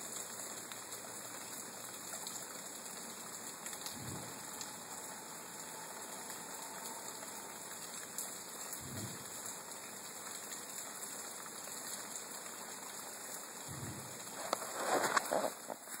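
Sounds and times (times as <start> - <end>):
steady rain: 0.0 - 16.0
low thumps: 13.7 - 14.1.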